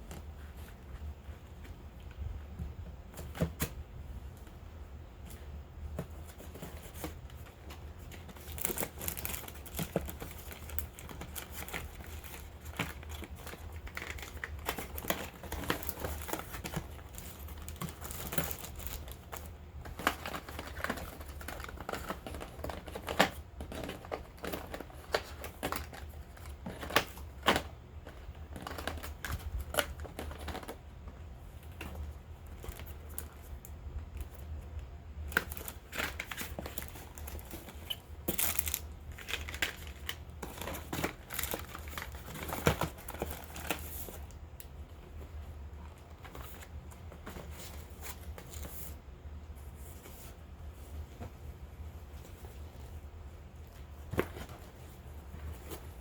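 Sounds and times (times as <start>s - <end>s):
packaging crinkling: 6.4s - 30.9s, 35.2s - 44.7s.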